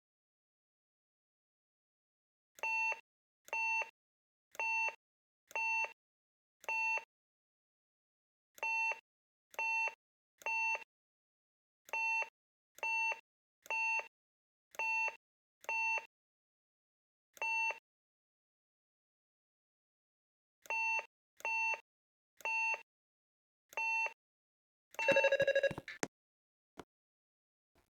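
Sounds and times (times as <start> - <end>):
intercom keypad beeps: 25.0 - 26.0.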